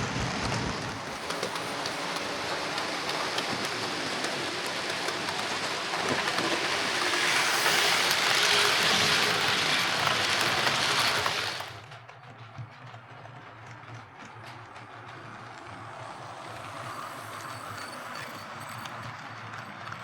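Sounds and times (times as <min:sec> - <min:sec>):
wheels clicking on rails: 0:00.0 - 0:20.0
model train motor whirring: 0:01.1 - 0:11.9.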